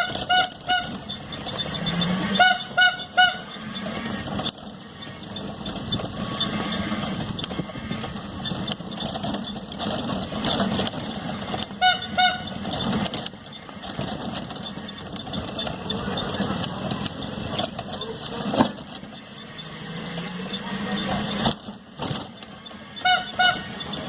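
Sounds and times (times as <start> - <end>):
vehicle horn beeps: 0.0 - 4.3, 11.7 - 12.6, 22.8 - 24.0
street traffic: 0.0 - 24.0.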